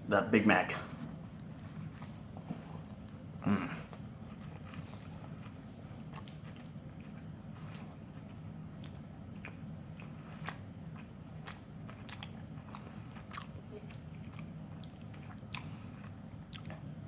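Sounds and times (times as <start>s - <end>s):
faint low hum: 0.0s - 17.0s
man chewing: 0.9s - 17.0s
mouth clicks and smacks: 3.6s - 15.7s, 16.5s - 16.9s.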